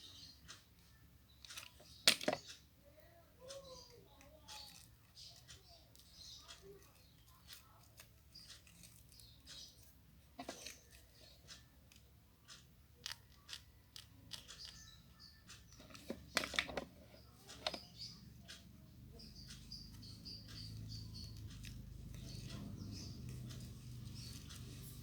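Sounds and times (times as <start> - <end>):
hands handling craft materials: 15.7 - 17.8.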